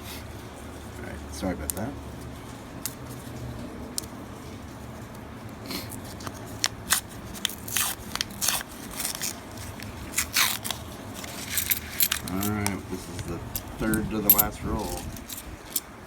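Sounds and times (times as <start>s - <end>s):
paper wrapper crinkling and tearing: 5.9s - 11.4s.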